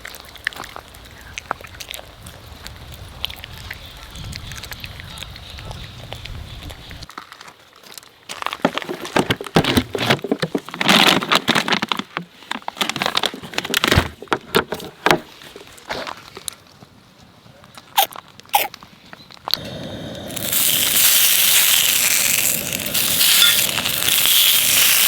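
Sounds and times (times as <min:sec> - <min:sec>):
dog crunching a hard treat: 0:20.4 - 0:25.0.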